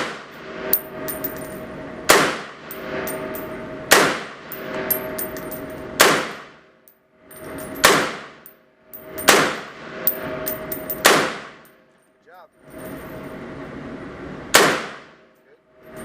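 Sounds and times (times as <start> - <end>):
light metallic clinks: 0.8 - 1.6, 2.7 - 3.5, 4.5 - 5.9, 6.9 - 9.4, 10.1 - 11.1
rifle shots: 14.6 - 15.1.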